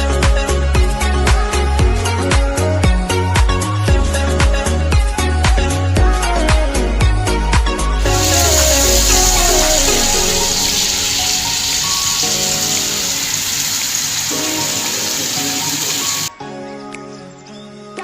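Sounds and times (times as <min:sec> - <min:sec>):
background music: 0:00.0 - 0:18.0
food sizzling in hot oil: 0:08.0 - 0:16.3.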